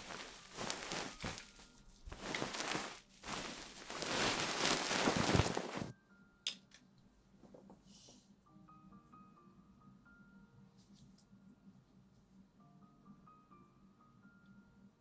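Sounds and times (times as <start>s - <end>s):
rustling and scrubbing: 0.0s - 5.9s.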